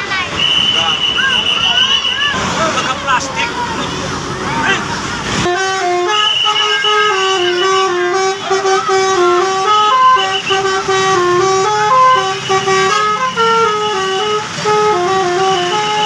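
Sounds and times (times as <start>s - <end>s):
bus horn playing a tune: 5.4s - 16.0s.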